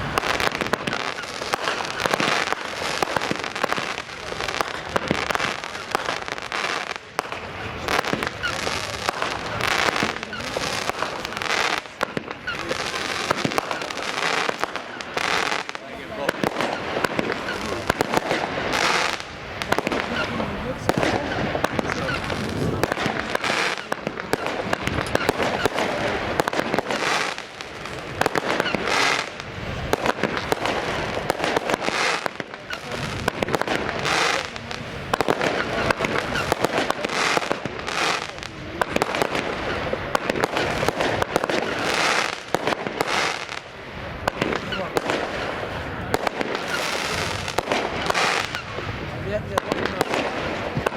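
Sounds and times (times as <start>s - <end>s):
fireworks bangs: 0.0s - 50.9s
fireworks crackling: 0.0s - 50.9s.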